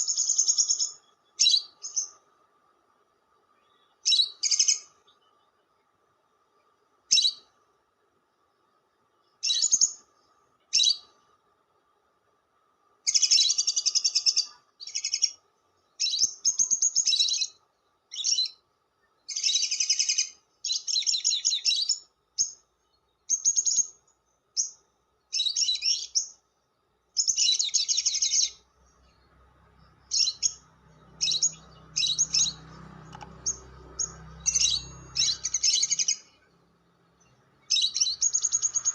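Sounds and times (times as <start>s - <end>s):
lovebird chattering: 0.0s - 2.2s, 13.1s - 15.4s, 19.3s - 22.6s, 27.2s - 29.3s, 30.1s - 36.5s, 37.3s - 38.9s.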